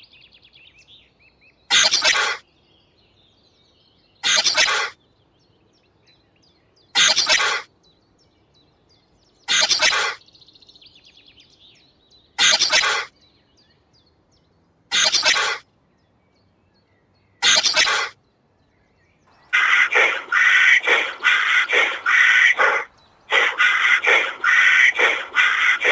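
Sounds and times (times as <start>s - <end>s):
small bird chirps: 0.0s - 25.9s
loud harsh animal call: 1.7s - 2.4s, 4.2s - 5.0s, 7.0s - 7.7s, 9.5s - 10.2s, 12.4s - 13.1s, 14.9s - 15.6s, 17.4s - 18.2s, 19.4s - 25.9s.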